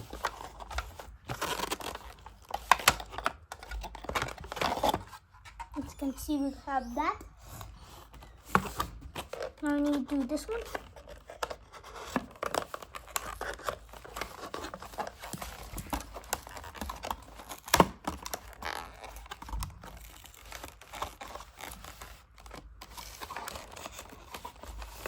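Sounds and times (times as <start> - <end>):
packaging crinkling and tearing: 0.0 - 6.9, 7.6 - 25.0.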